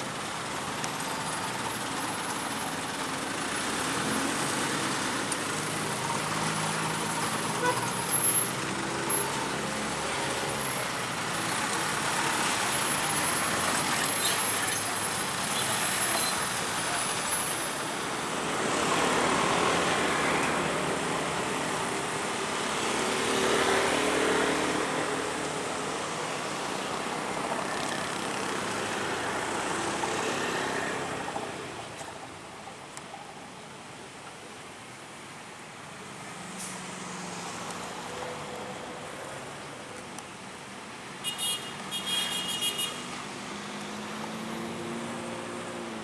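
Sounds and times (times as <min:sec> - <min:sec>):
road traffic passing: 0:00.0 - 0:46.0.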